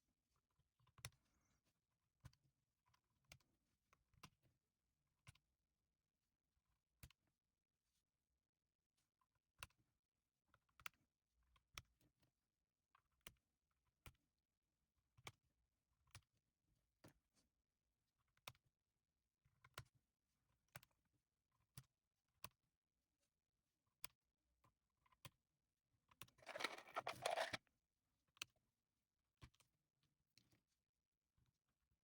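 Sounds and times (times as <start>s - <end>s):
mechanical keyboard keystrokes: 26.4s - 27.6s.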